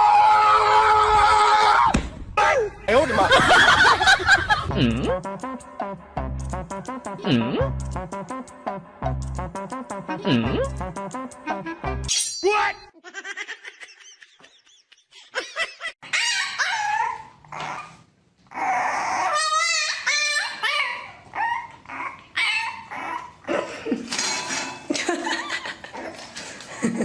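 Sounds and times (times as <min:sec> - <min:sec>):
pet yipping and whining: 0:16.0 - 0:23.5.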